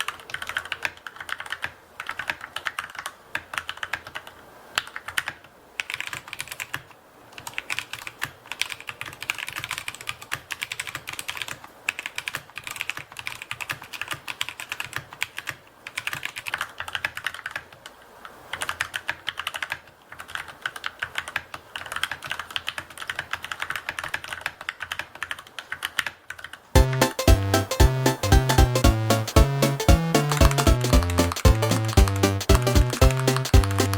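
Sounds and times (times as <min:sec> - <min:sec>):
mechanical keyboard typing: 0:00.0 - 0:33.9
background music: 0:26.8 - 0:33.9.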